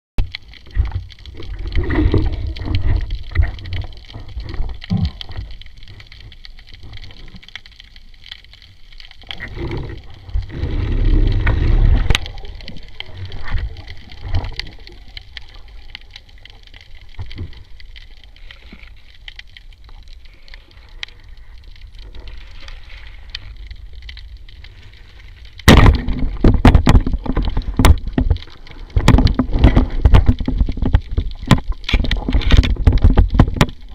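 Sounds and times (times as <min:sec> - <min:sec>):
muffled underwater rumbles and gurgling: 0:00.2 - 0:33.9
splashing water: 0:09.1 - 0:19.1.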